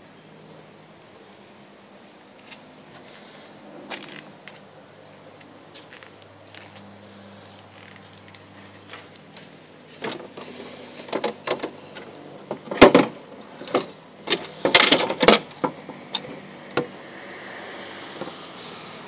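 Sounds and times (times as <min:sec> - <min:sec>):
sharp clicks and knocks: 0:08.2 - 0:17.0.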